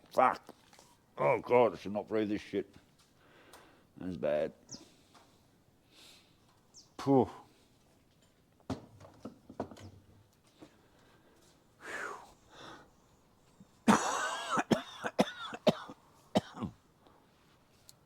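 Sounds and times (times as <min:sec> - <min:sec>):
gasp: 0:03.2 - 0:03.9
man coughing: 0:13.9 - 0:16.8.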